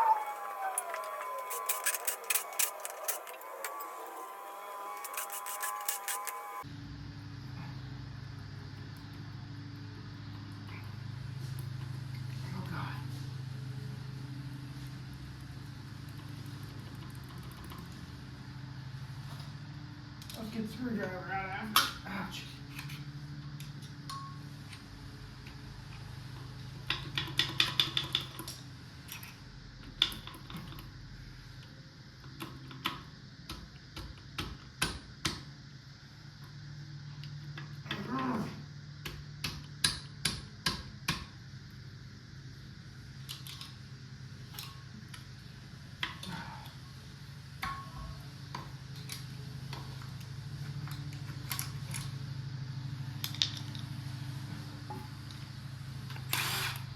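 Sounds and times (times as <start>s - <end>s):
metal parts and tools clinking: 0.0s - 6.6s.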